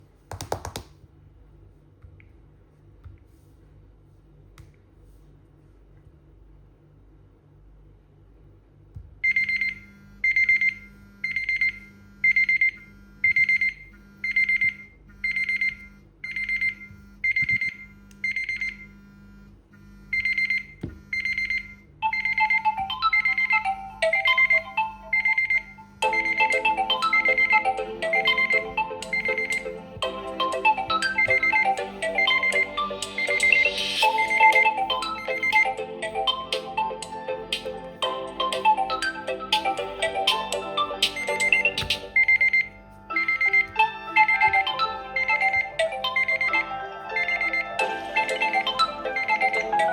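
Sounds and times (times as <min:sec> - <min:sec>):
high-pitched electronic alarm beeping: 0:20.1 - 0:36.6, 0:40.7 - 0:49.9
phone ringtone melodies: 0:21.2 - 0:49.9.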